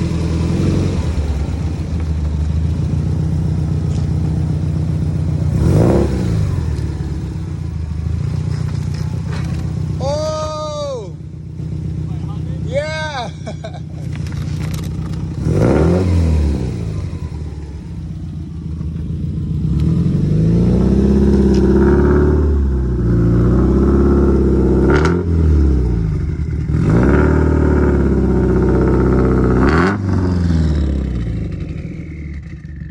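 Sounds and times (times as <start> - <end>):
car engine accelerating: 0.0 - 32.9
gear change snap: 14.0 - 15.4.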